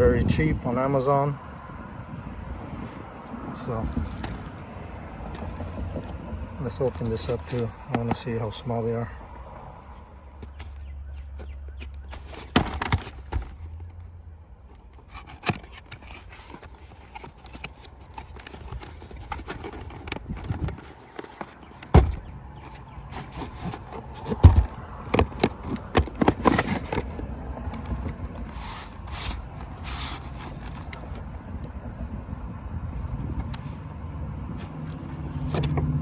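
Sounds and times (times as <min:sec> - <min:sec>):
packaging scraping: 0:02.6 - 0:04.6, 0:05.3 - 0:06.1, 0:06.7 - 0:08.6, 0:09.9 - 0:14.0, 0:14.7 - 0:31.3.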